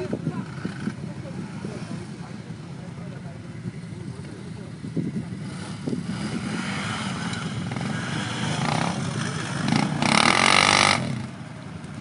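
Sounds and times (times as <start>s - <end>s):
atv engines running: 0.0s - 12.0s
atv engine revving loudly: 5.4s - 11.4s.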